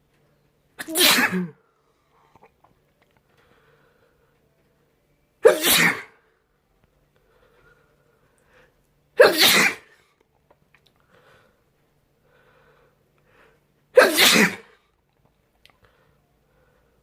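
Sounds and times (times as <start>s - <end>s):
person sneezing: 0.8s - 1.6s, 5.4s - 6.2s, 9.2s - 10.0s, 14.0s - 14.8s.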